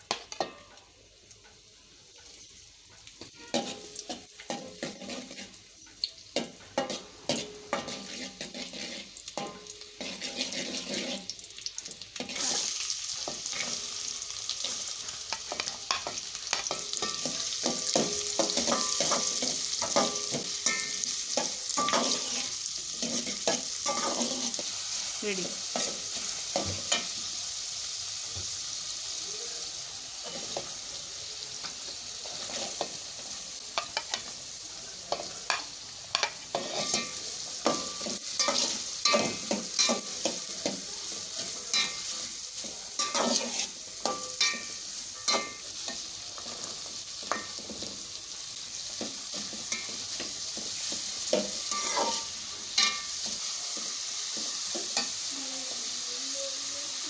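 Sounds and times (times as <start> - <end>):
food sizzling in oil: 0.0 - 57.0
spatula scraping and clinking pan: 3.2 - 11.4, 14.6 - 24.8, 35.1 - 48.0, 49.0 - 55.2.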